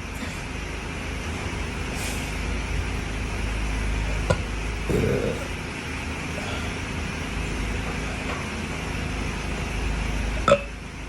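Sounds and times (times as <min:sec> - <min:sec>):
short burp: 0:04.9 - 0:05.6.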